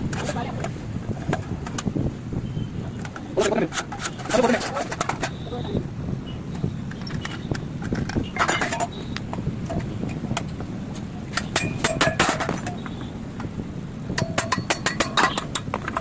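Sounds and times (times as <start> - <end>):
metal clinking and tapping: 6.9 - 10.7, 11.3 - 13.6, 14.2 - 16.0.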